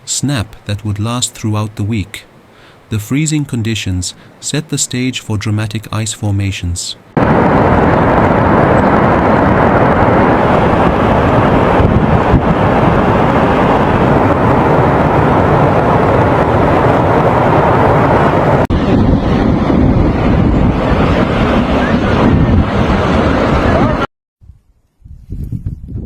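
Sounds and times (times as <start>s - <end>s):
waterfall roaring: 5.9s - 19.0s
wind buffeting microphone: 7.1s - 26.0s.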